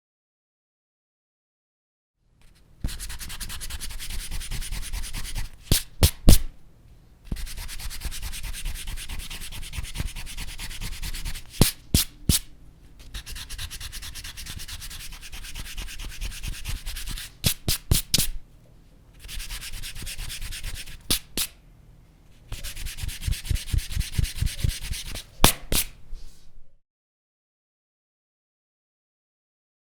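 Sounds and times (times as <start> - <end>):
eraser rubbing on paper: 2.9 - 6.4, 7.3 - 12.4, 13.1 - 18.4, 19.2 - 21.5, 22.5 - 26.4.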